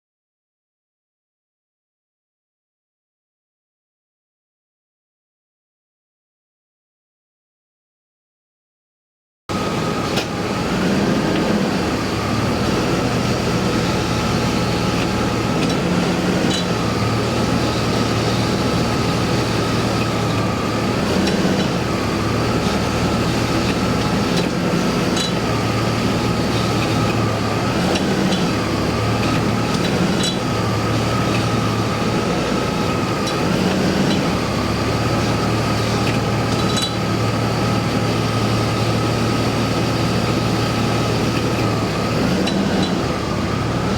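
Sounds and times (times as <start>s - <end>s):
car engine idling: 9.5s - 42.1s.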